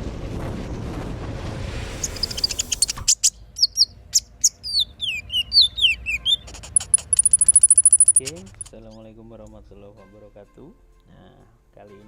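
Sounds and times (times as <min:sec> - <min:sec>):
cage bird chirping: 0:02.0 - 0:09.1.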